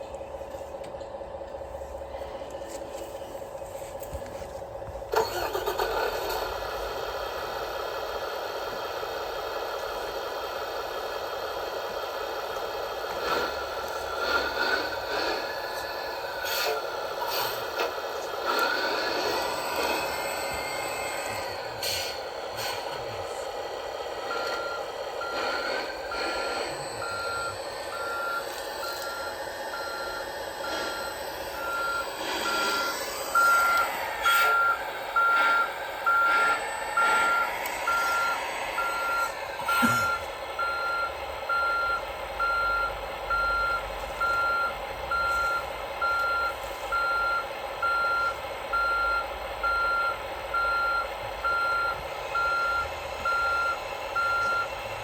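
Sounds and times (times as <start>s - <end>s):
simulated engine hum: 0.0s - 55.0s
reversing alarm beeping: 13.0s - 22.9s, 23.8s - 55.0s.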